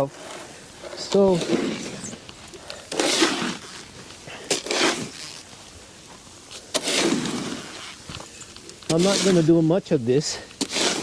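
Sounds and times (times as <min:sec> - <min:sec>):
shovel scraping snow: 0:00.0 - 0:05.5, 0:06.6 - 0:08.3, 0:08.9 - 0:09.7, 0:10.3 - 0:11.0.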